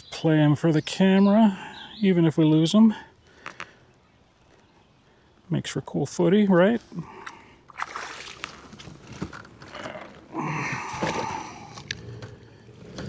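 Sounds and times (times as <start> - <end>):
water splashing: 7.6 - 9.2.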